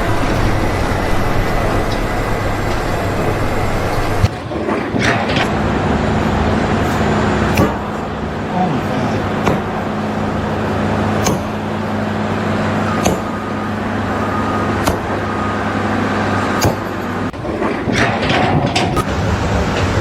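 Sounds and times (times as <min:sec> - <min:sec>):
motor engine humming: 0:00.0 - 0:20.0
sharp knocks: 0:04.2 - 0:08.4, 0:09.2 - 0:14.2, 0:14.8 - 0:15.3, 0:16.6 - 0:20.0.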